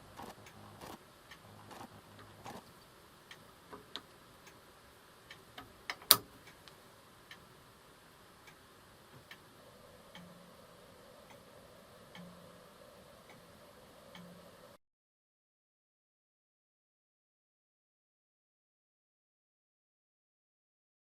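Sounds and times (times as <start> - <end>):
watch ticking: 0.0 - 7.6, 8.3 - 14.6
sharp click: 5.6 - 6.3.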